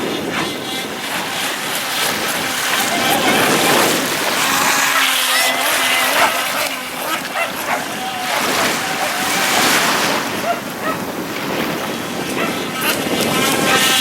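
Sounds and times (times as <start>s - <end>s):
sea surf washing: 0.0s - 14.0s
wind buffeting microphone: 0.0s - 14.0s.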